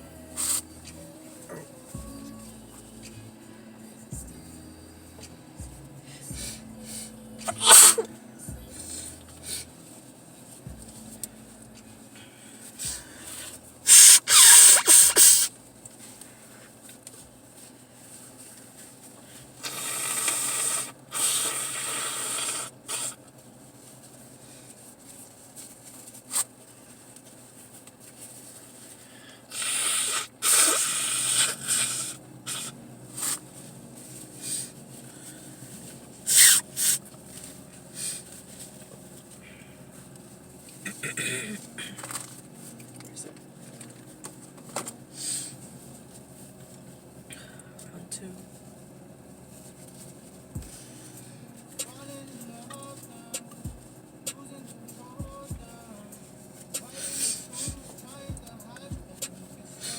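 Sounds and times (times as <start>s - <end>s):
hissing breaths through nose: 6.1s - 8.1s, 12.1s - 15.5s, 19.6s - 23.2s, 28.9s - 33.6s, 34.3s - 37.0s.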